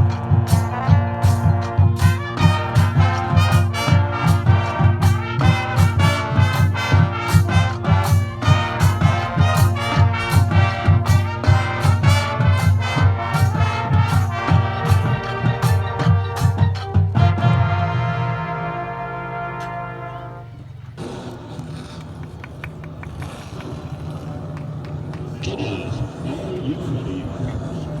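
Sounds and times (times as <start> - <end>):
bass line: 0.0 - 19.4
steady drum beat: 0.0 - 19.9
marching band brass: 0.0 - 27.8.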